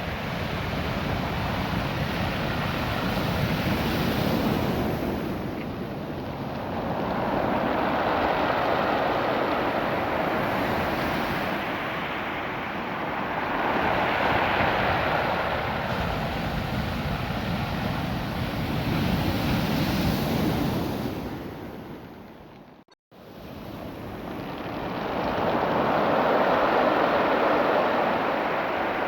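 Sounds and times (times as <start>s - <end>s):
surf washing over stones: 0.2s - 21.5s, 23.4s - 29.0s.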